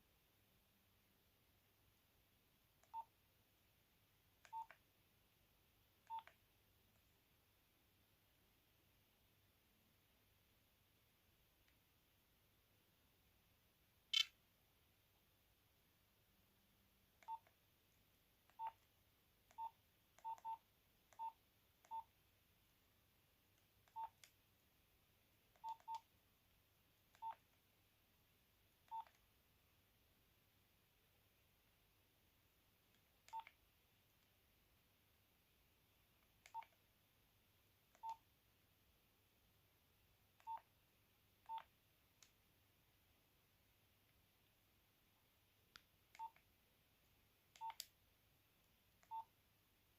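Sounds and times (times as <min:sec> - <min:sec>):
keypad beeps: 0:04.5 - 0:04.7, 0:06.1 - 0:06.3, 0:17.2 - 0:17.5, 0:18.6 - 0:18.8, 0:19.5 - 0:20.6, 0:21.2 - 0:22.1, 0:23.9 - 0:24.2, 0:25.6 - 0:26.0, 0:27.2 - 0:27.4, 0:28.9 - 0:29.2, 0:33.3 - 0:33.5, 0:38.0 - 0:38.2, 0:40.4 - 0:40.6, 0:41.5 - 0:41.7, 0:46.2 - 0:46.4, 0:47.6 - 0:47.8, 0:49.0 - 0:49.3
key beeps: 0:46.2 - 0:46.4.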